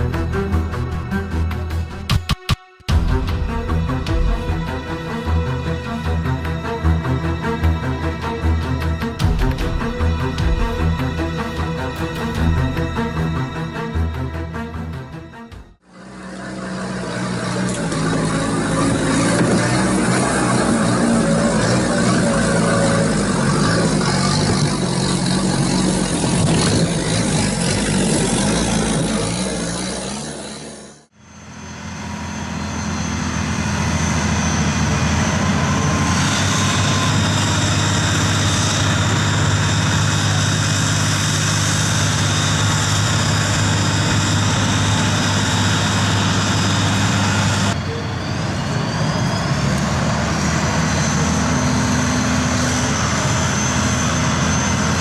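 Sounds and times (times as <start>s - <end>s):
engine low hum: 15.8s - 55.0s
vehicle engine running: 15.8s - 55.0s.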